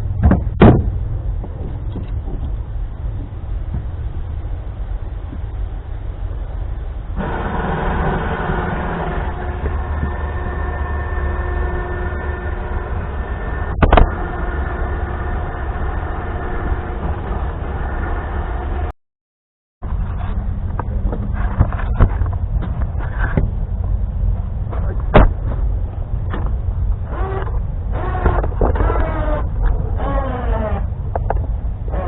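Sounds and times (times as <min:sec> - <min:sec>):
electric winch motor whining: 0:07.2 - 0:18.9, 0:27.0 - 0:30.9
sharp clunk: 0:25.1 - 0:25.5.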